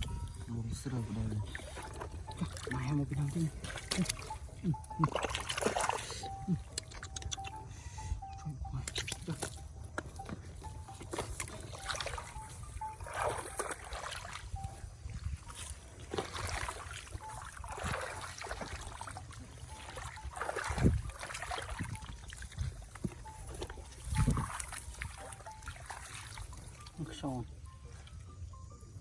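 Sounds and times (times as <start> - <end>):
heavy water splashes: 0.0 - 6.7, 10.7 - 27.6
shallow water sloshing: 0.0 - 29.0.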